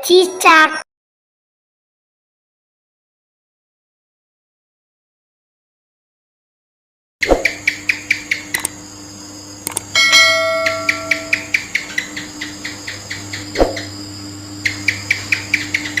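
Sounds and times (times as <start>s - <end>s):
gecko chirping clicks: 7.2s - 8.8s, 9.6s - 14.0s, 14.6s - 16.0s
loud bell-like ring: 9.9s - 11.3s.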